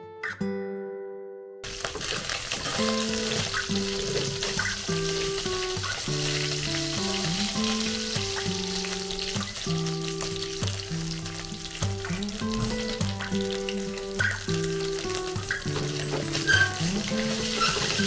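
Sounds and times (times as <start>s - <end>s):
food sizzling in oil: 1.6s - 18.0s.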